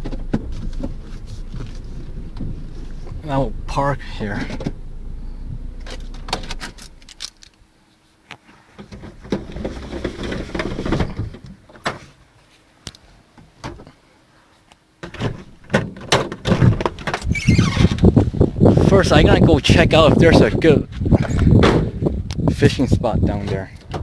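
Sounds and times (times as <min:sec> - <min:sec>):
car engine running: 0:00.0 - 0:07.3
car door and keys clicking: 0:04.4 - 0:07.6.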